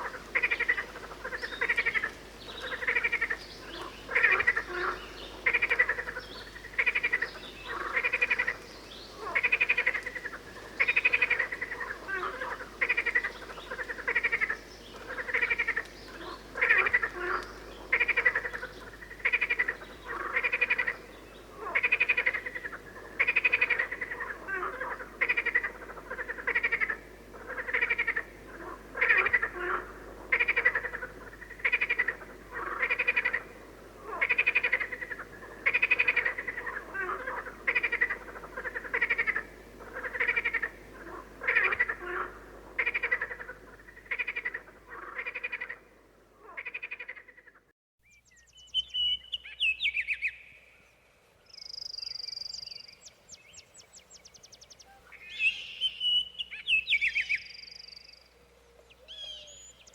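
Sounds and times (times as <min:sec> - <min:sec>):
frogs croaking: 0:00.0 - 0:47.7.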